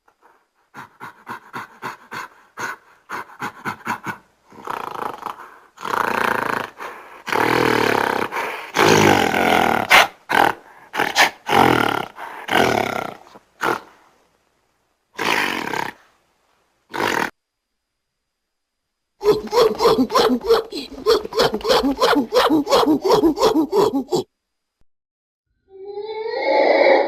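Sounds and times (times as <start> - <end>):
ape calling: 19.2 - 24.3.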